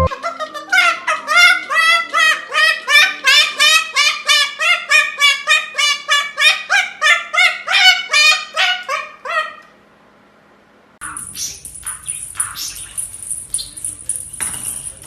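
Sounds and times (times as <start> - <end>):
parrot squawking rapidly: 0.0 - 9.6, 11.0 - 13.1.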